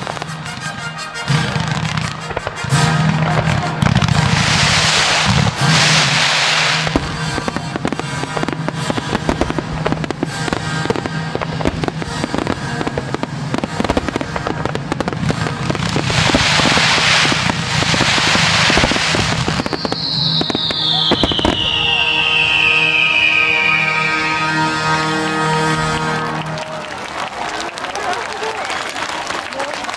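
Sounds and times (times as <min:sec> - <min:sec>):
music: 0:00.0 - 0:04.7
fireworks bangs and crackles: 0:00.0 - 0:29.9
fireworks hissing: 0:02.4 - 0:25.2
long falling whistle: 0:19.5 - 0:26.9.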